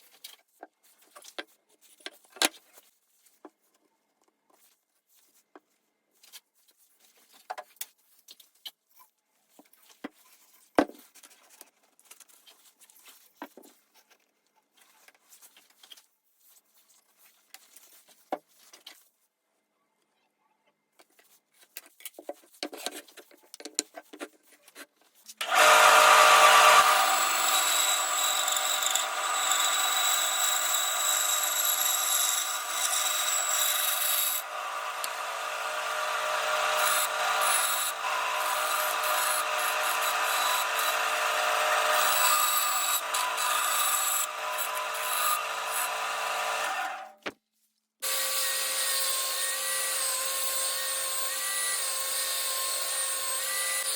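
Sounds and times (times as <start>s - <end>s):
power tool running: 25.4s - 47.2s, 48.0s - 53.9s.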